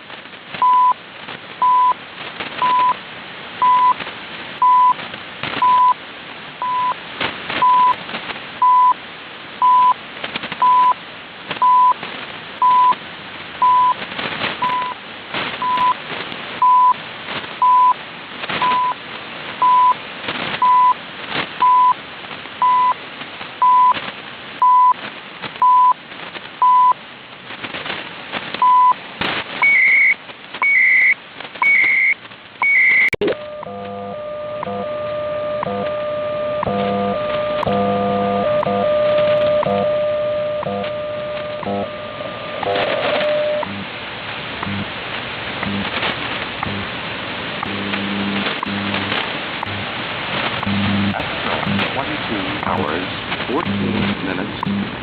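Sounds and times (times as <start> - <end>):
shortwave static with crackles: 0.0 - 55.0
time signal beeps: 2.6 - 3.0, 3.6 - 4.0, 5.6 - 6.0, 6.6 - 7.0, 7.6 - 8.0, 8.6 - 9.0, 9.6 - 10.0, 10.6 - 11.0, 12.6 - 13.0, 14.6 - 15.0, 19.6 - 20.0, 20.6 - 21.0, 21.6 - 22.0, 22.6 - 23.0, 29.6 - 43.7.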